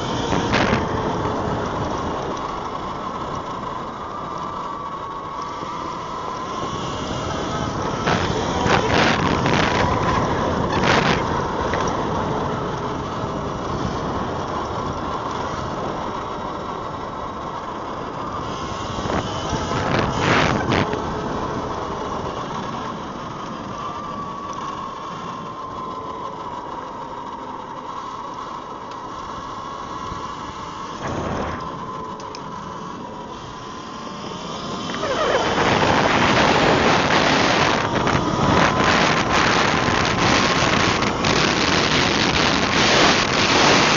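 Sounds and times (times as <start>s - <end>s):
electric motor whine: 0.0s - 43.9s
rolling and wind noise: 0.0s - 43.9s.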